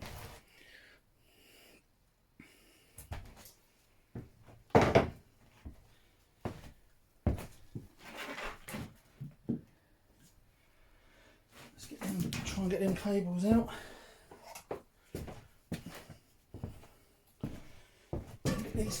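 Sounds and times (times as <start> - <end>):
knocks and clunks of scooter parts: 4.7 - 5.2, 18.4 - 19.0
rustling scrape: 8.0 - 8.9.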